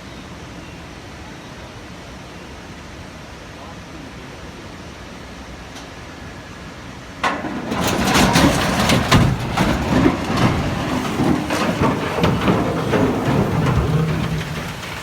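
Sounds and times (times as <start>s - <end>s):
bridge collapsing with crashes: 7.2s - 15.0s
heavy rumble: 7.2s - 15.0s.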